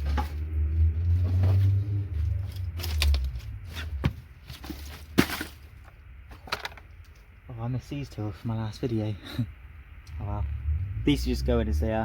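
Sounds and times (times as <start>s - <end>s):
small parts clicking and knocking: 4.6s - 7.4s.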